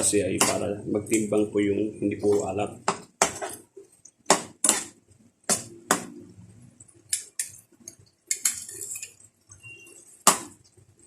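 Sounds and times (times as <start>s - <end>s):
metal utensil scraping a pan: 0.3s - 0.7s, 3.2s - 3.6s, 8.3s - 10.5s.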